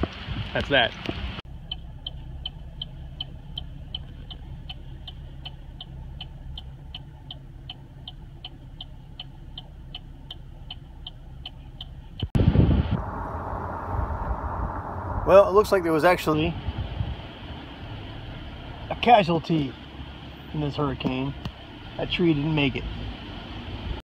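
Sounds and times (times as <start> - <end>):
car engine rumble: 0.0 - 24.0
turn signal ticking: 1.0 - 12.4, 16.6 - 24.0
rush of low noise: 12.2 - 19.0.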